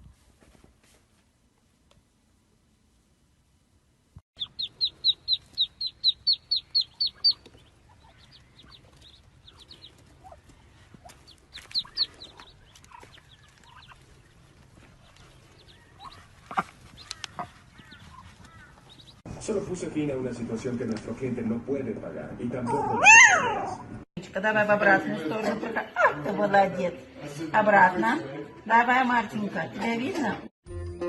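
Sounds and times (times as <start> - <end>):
high-pitched bird chirps: 4.4 - 10.4, 11.3 - 14.0.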